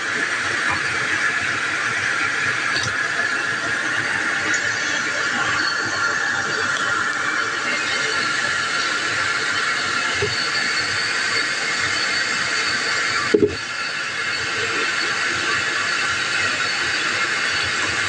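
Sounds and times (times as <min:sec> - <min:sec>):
tap water running: 0:02.6 - 0:03.0.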